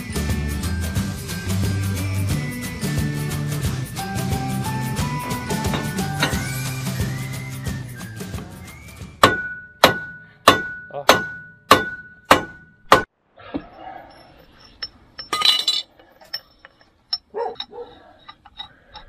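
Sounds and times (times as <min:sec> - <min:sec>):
hammer striking steel: 0:05.4 - 0:06.6, 0:09.2 - 0:16.4
metal parts clinking: 0:14.0 - 0:19.0.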